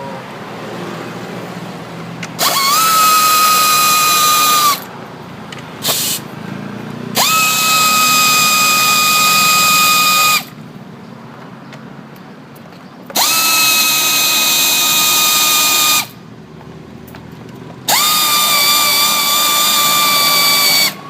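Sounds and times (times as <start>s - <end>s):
cordless drill whining: 2.2s - 4.9s, 7.2s - 10.5s, 13.1s - 16.1s, 17.9s - 21.0s.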